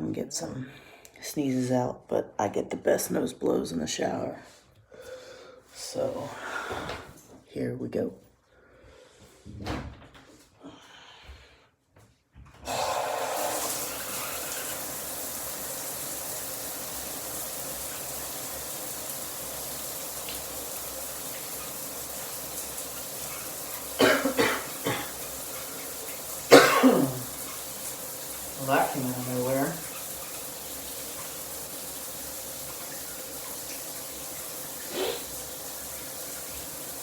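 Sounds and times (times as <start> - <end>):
shower water running: 12.7 - 37.0
person sneezing: 24.0 - 25.1, 26.5 - 27.2, 34.9 - 35.3.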